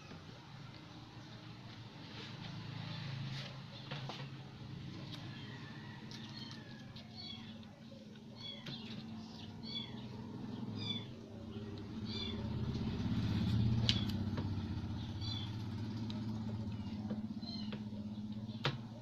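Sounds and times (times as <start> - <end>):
low engine-like rumble: 0.0 - 19.0
high chirping animal calls: 8.3 - 11.2, 12.0 - 12.5.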